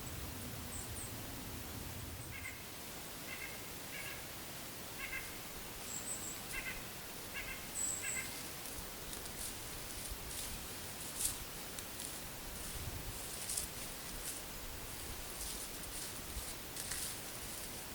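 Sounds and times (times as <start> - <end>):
bird nasal calls: 2.2 - 4.2, 5.0 - 8.4.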